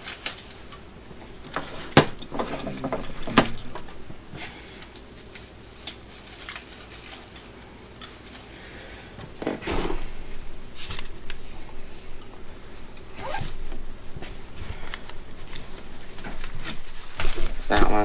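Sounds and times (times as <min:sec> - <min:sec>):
bag handling noise: 0:00.0 - 0:05.3, 0:09.2 - 0:18.0
zipper being pulled: 0:13.1 - 0:13.6.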